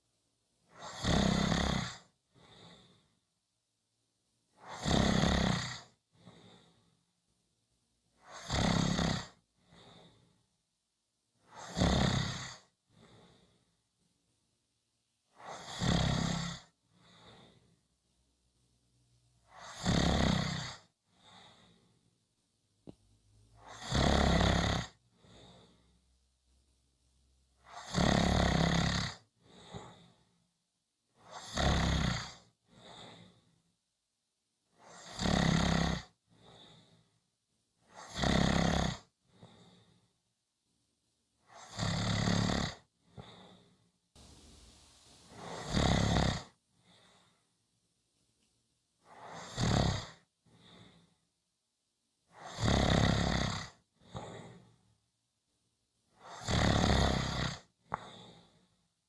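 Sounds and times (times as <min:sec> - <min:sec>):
person snoring: 0:00.8 - 0:02.0, 0:04.6 - 0:05.9, 0:08.3 - 0:09.4, 0:11.6 - 0:12.6, 0:15.4 - 0:16.7, 0:19.6 - 0:20.9, 0:23.6 - 0:25.0, 0:27.8 - 0:29.2, 0:31.3 - 0:32.4, 0:34.9 - 0:36.1, 0:38.0 - 0:39.1, 0:41.5 - 0:42.9, 0:44.2 - 0:46.5, 0:49.1 - 0:50.2, 0:52.4 - 0:53.8, 0:56.3 - 0:58.0.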